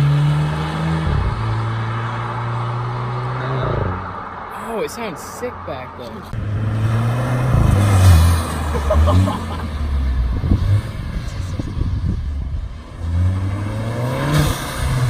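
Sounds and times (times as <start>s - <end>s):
car engine accelerating: 6.1s - 15.0s
exhaust crackles: 6.1s - 15.0s.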